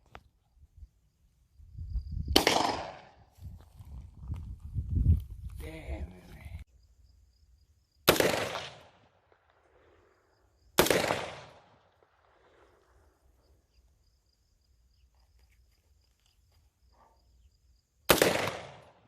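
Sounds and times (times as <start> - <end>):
gunshots with echo: 2.4 - 3.2, 8.1 - 9.0, 10.8 - 11.8, 18.1 - 19.0.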